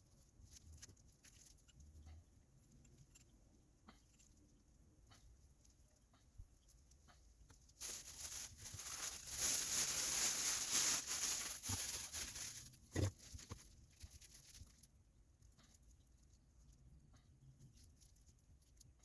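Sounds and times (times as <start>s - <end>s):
rustling crinkling handling noise: 7.5s - 16.9s.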